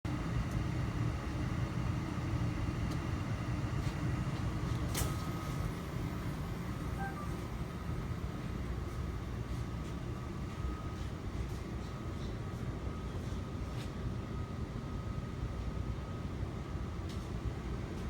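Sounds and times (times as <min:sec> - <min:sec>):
factory machinery hum: 0:00.1 - 0:18.0
faint short beeps: 0:06.9 - 0:07.6.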